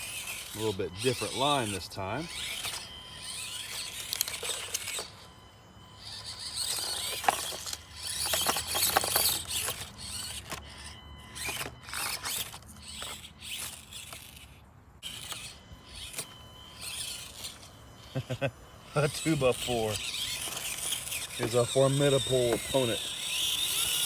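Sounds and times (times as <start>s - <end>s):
small motor and gears whirring: 0.0s - 24.0s
clicks and knocks of tires and chassis: 6.6s - 10.8s.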